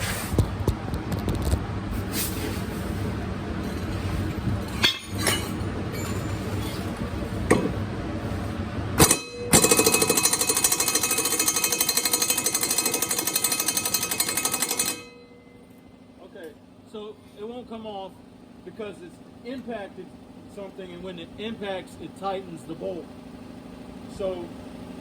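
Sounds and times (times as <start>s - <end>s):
impact wrench hammering: 9.0s - 15.3s.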